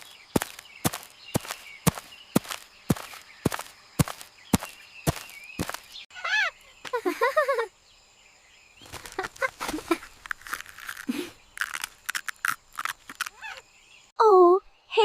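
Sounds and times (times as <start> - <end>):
crunching and crackling snaps: 0.0 - 5.9, 8.8 - 13.6.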